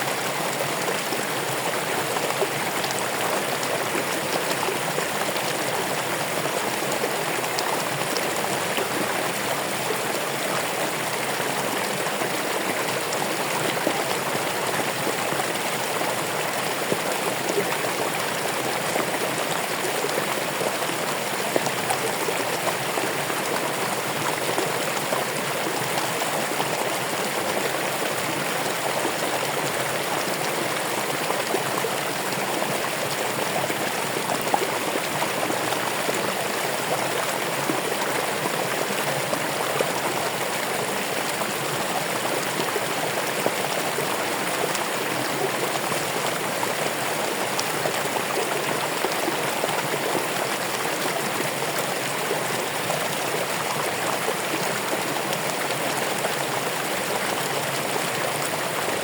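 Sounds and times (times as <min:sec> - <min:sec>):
stream flowing over stones: 0:00.0 - 0:59.0.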